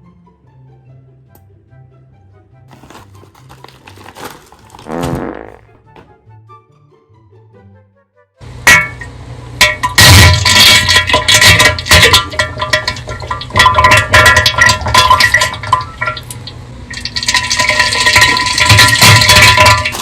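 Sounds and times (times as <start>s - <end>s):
background music with held tones: 0.0s - 9.6s
plastic packaging crinkling: 2.7s - 5.8s.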